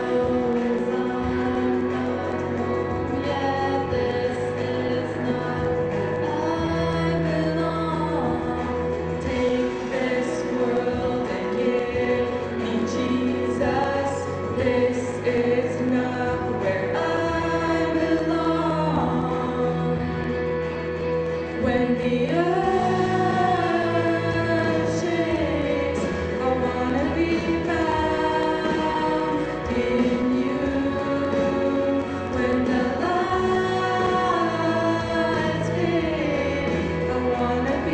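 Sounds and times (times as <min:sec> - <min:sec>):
instrumental backing with bass: 0:00.0 - 0:37.9
voices singing gospel song: 0:00.0 - 0:37.9.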